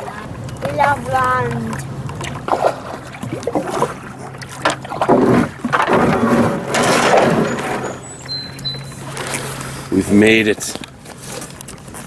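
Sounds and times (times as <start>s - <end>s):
paddle splashing strokes: 0.6s - 9.9s.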